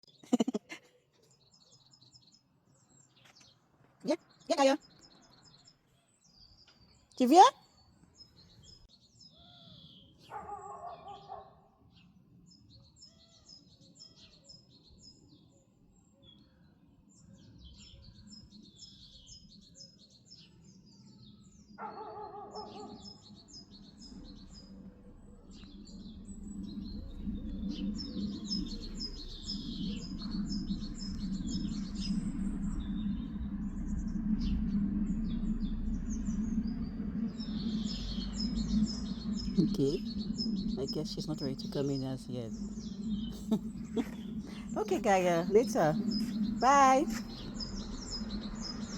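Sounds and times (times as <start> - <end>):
small birds chirping: 0.0 - 48.9
low steady rumble: 23.6 - 48.9.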